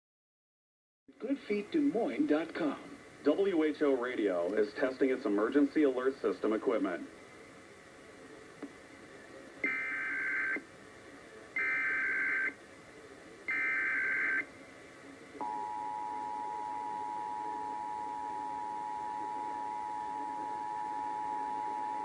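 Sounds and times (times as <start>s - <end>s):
two-tone attention signal: 15.4s - 22.0s.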